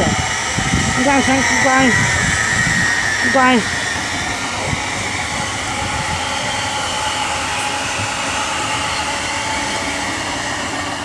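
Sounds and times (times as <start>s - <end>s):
train rumbling past: 0.0s - 11.0s.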